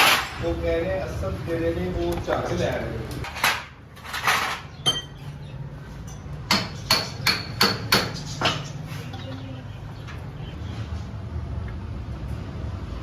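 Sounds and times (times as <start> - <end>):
hammer striking metal: 6.1 - 8.7.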